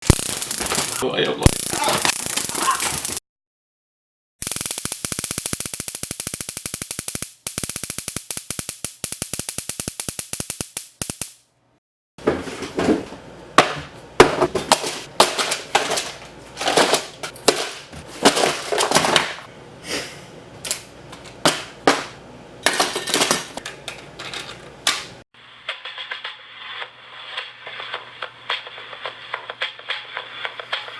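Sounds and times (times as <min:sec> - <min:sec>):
loud electric snaps: 0:00.0 - 0:03.2, 0:04.4 - 0:11.5
taser crackling: 0:00.0 - 0:03.2, 0:04.4 - 0:11.4.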